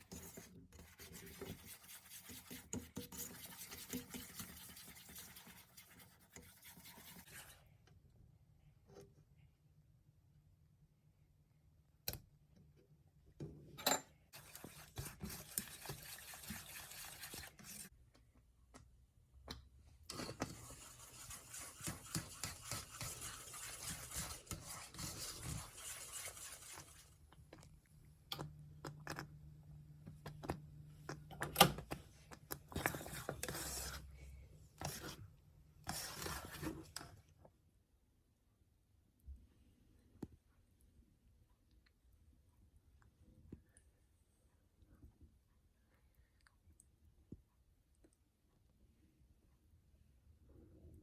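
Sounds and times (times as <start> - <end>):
rubbing and scraping against a bowl: 0.0 - 7.8, 14.3 - 18.0, 20.1 - 29.4, 30.1 - 37.3.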